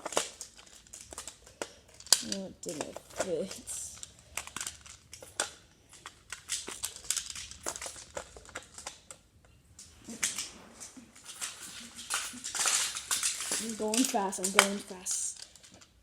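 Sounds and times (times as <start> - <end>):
plastic tiles clicking together: 0.0 - 9.2, 11.3 - 15.9.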